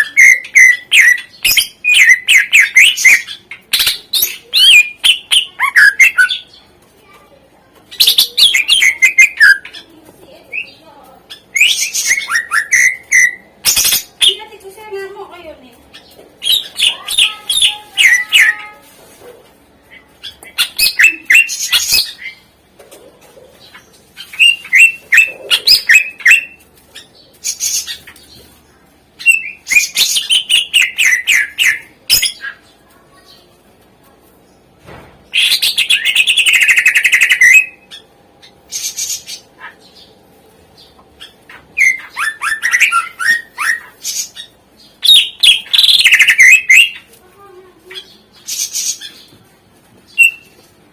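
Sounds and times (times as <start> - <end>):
bird singing varied chirps: 0.0 - 6.6, 7.9 - 9.9, 10.6 - 14.4, 15.9 - 18.8, 29.2 - 32.6, 40.8 - 47.1.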